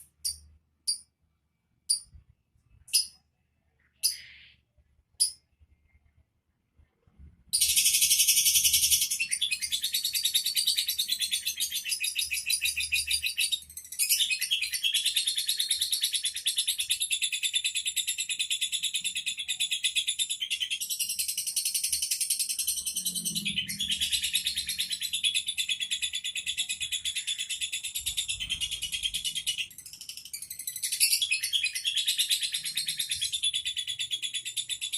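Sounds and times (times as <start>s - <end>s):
lovebird chattering trill: 4.0s - 4.6s.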